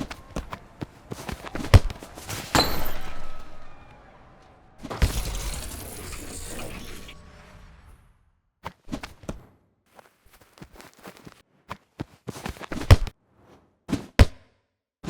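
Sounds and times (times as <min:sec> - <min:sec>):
quick footsteps: 0:00.0 - 0:03.4, 0:08.7 - 0:14.2
ball touches: 0:00.0 - 0:03.9
hard ball kick: 0:00.0 - 0:03.9, 0:12.8 - 0:13.1, 0:13.9 - 0:14.4.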